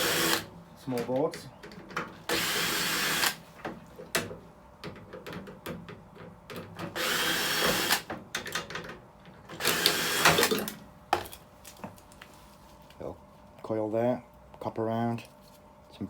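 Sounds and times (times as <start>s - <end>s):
cordless drill driving screws: 0.0s - 0.5s, 2.3s - 3.4s, 6.9s - 8.1s, 9.5s - 10.7s.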